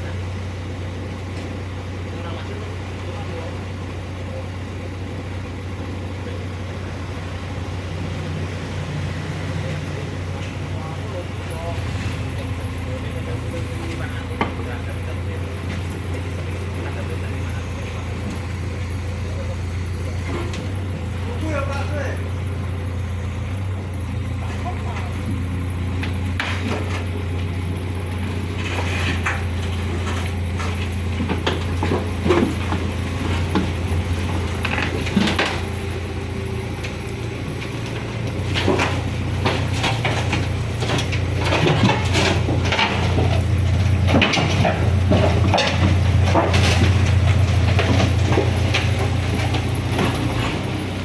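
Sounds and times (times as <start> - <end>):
excavator diesel engine running: 0.0 - 51.0
metallic clanks and knocks: 28.5 - 51.0.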